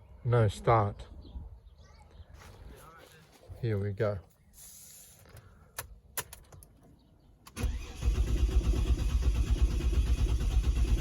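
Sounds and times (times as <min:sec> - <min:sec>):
starter motor cranking engine: 0:07.5 - 0:11.0.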